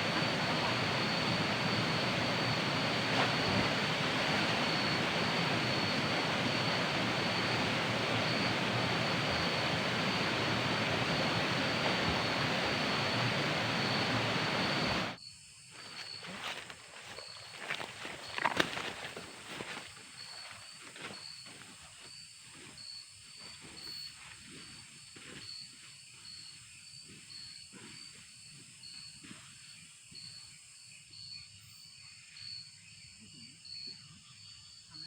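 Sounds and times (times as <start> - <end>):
steady high-pitched whine: 0.0 - 15.2
waterfall rushing: 0.0 - 15.2.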